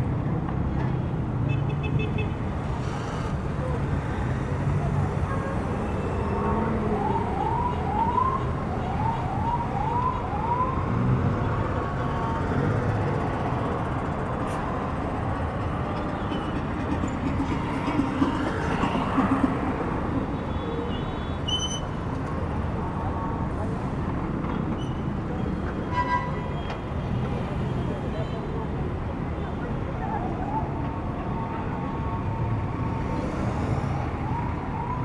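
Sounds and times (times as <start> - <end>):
city street traffic rumble: 0.0 - 35.0
siren whooping: 33.6 - 35.0.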